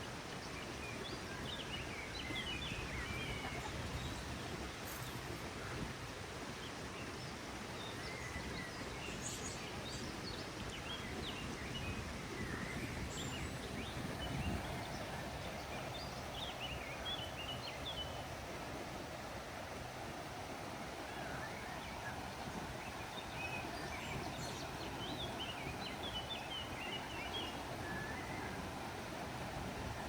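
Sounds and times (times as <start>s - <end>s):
small birds chirping: 21.0s - 28.7s.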